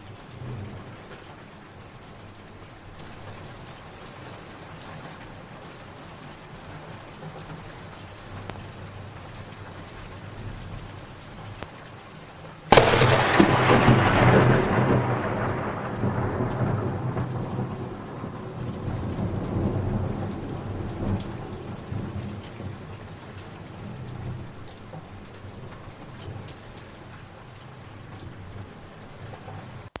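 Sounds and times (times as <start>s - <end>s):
steady rain: 0.0s - 30.0s
thunderclap rumbling: 12.7s - 22.8s.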